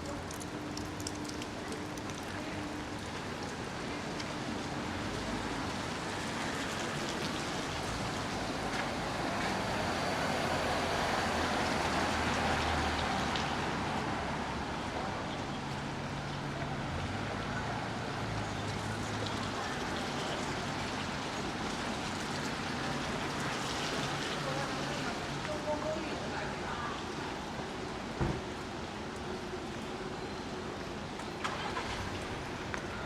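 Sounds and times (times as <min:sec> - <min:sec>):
vehicle passing on wet road: 0:00.0 - 0:15.0, 0:31.4 - 0:33.0
steady rain: 0:00.0 - 0:33.0.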